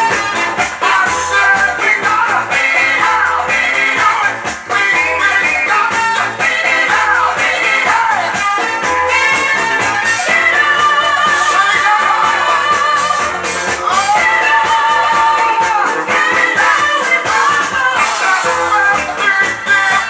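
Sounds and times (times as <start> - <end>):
soul music with singing: 0.0 - 20.0.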